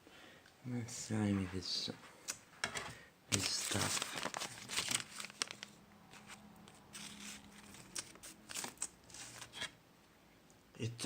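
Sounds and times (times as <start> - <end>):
wrapper crinkling: 3.3 - 9.8.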